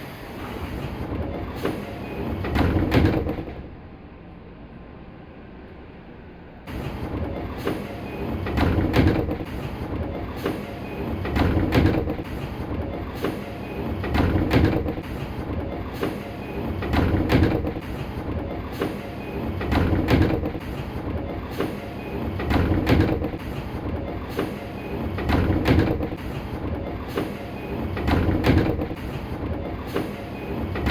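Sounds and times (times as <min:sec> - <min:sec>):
sliding doors closing and knocking: 0:00.0 - 0:03.7, 0:06.7 - 0:30.9.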